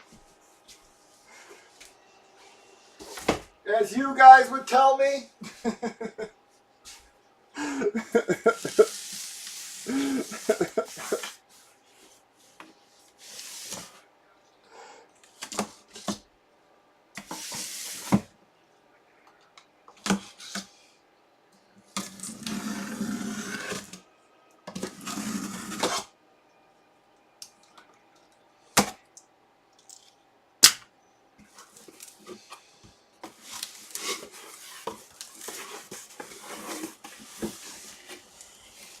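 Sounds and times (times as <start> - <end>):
packaging rustling and scraping: 8.5 - 11.4, 22.0 - 24.0, 33.2 - 39.0.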